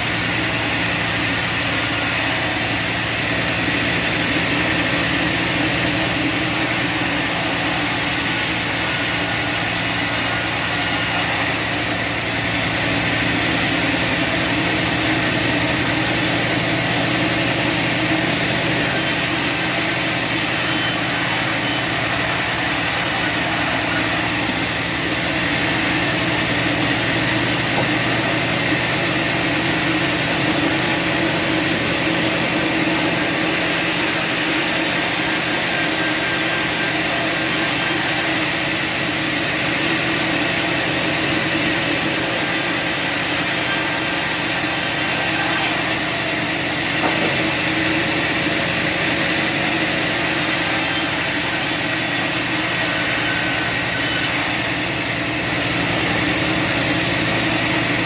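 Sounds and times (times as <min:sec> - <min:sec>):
sawmill engine humming: 0:00.0 - 0:58.0.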